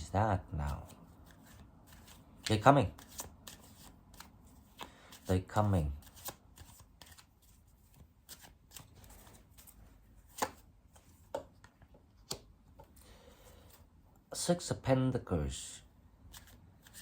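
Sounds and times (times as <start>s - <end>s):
cards shuffling: 0.6s - 12.9s, 16.2s - 17.0s
card snaps: 10.3s - 10.6s.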